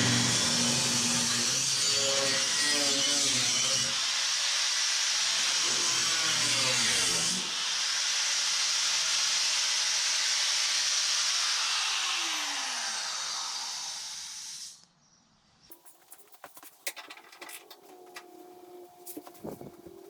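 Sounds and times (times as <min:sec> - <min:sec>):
power tool winding down: 0:11.2 - 0:14.8.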